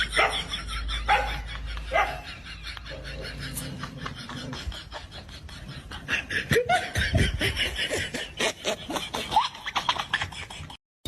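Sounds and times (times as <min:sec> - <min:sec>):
people laughing: 0:00.0 - 0:10.8.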